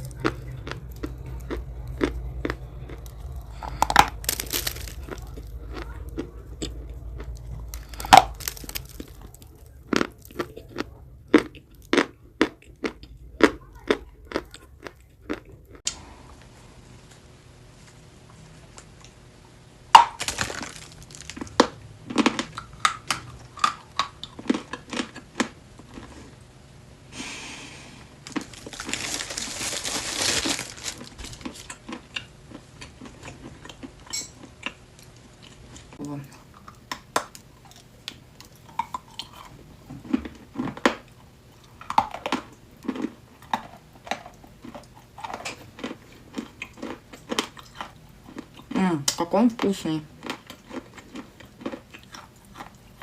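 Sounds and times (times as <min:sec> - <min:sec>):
rustling and crumbling noise: 0:00.0 - 0:12.8, 0:15.0 - 0:19.3, 0:19.9 - 0:26.6, 0:28.0 - 0:34.0
loud crack: 0:03.6 - 0:05.5, 0:20.0 - 0:24.0.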